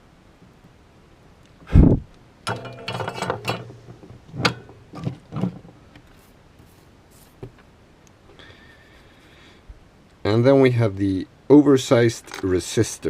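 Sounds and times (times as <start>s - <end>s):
tools clicking and rattling on workbench: 2.5s - 5.7s.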